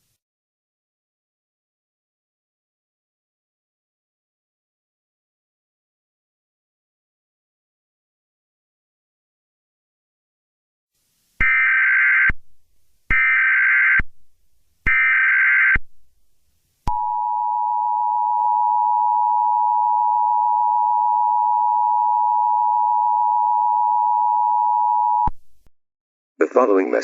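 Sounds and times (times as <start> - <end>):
steady two-tone attention signal: 16.9 - 25.3.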